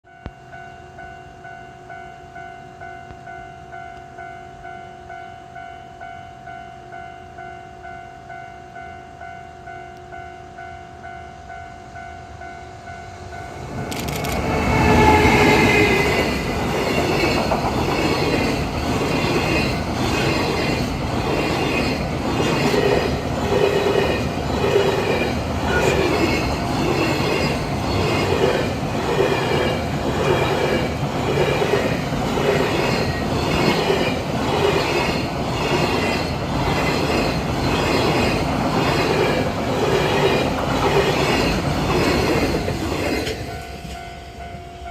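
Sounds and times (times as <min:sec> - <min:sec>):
crossing warning bell: 0:00.0 - 0:44.9
freight train passing: 0:00.1 - 0:44.9
wheels clattering over rail joints: 0:14.4 - 0:44.0.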